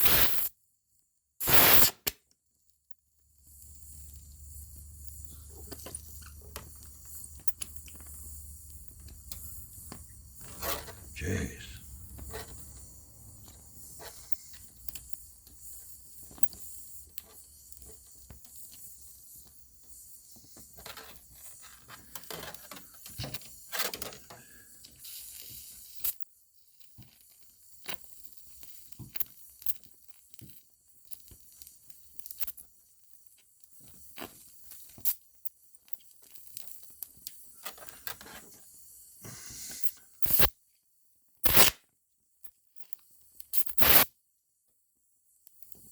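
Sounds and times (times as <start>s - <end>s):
welding torch hissing: 0.0s - 0.5s, 1.4s - 2.1s, 3.5s - 21.9s, 24.4s - 26.1s, 38.7s - 40.5s, 41.4s - 41.7s, 43.8s - 44.1s.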